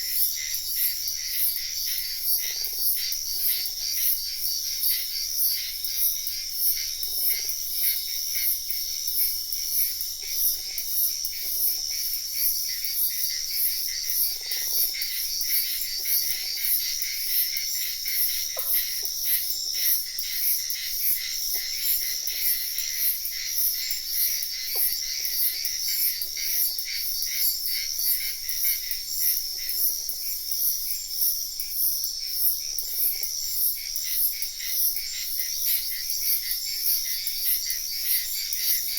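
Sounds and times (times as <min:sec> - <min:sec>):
insects chirring: 0:00.1 - 0:38.9.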